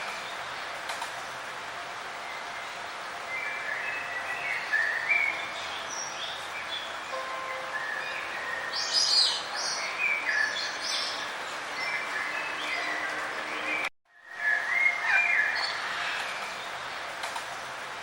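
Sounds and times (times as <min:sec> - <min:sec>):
songbirds chirping and trilling: 0:00.0 - 0:18.0
steady background hiss: 0:00.0 - 0:18.0.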